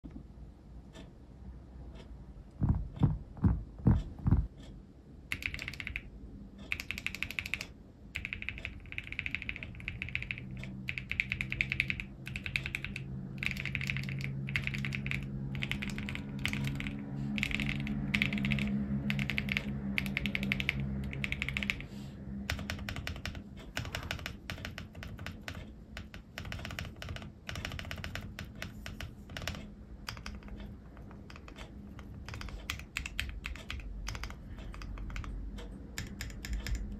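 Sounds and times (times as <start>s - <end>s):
low thuds: 2.6s - 4.6s
mechanical keyboard typing: 5.3s - 36.9s.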